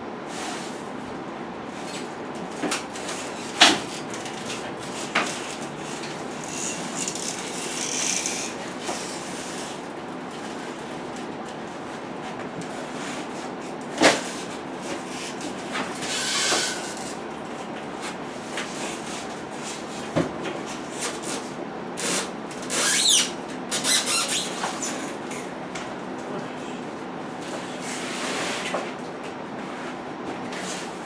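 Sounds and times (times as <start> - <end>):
falling squeak: 22.7 - 24.9
rustling scrapes: 27.6 - 28.8.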